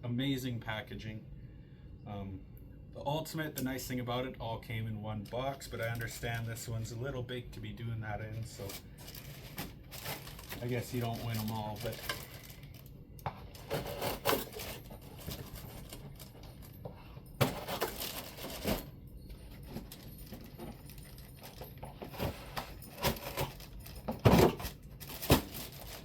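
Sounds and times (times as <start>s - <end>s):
packaging rustling: 8.5s - 16.8s, 17.4s - 26.0s.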